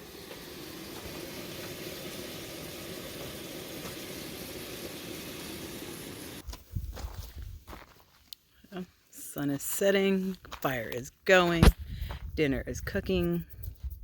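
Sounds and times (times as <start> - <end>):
food cooking hiss: 0.0 - 6.4.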